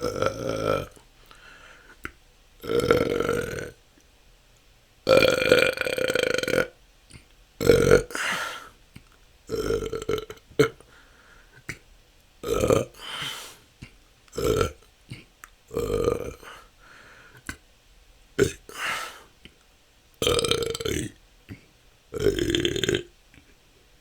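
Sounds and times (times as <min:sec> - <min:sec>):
person burping: 0:00.0 - 0:01.0, 0:02.6 - 0:03.8, 0:05.1 - 0:08.7, 0:09.5 - 0:10.8, 0:12.4 - 0:16.7, 0:18.4 - 0:19.2, 0:20.2 - 0:23.1.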